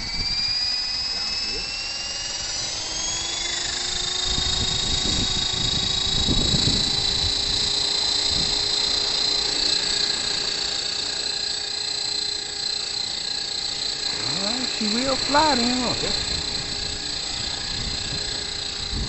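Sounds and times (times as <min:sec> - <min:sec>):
rc helicopter motor whining: 0:00.0 - 0:19.0
wind rumbling on microphone: 0:03.9 - 0:08.7, 0:15.8 - 0:19.0.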